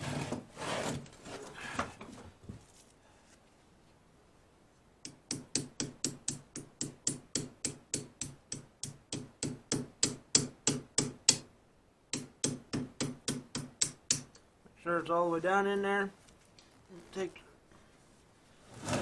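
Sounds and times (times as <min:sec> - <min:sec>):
hammer tapping metal: 0:05.0 - 0:11.5, 0:12.1 - 0:14.4.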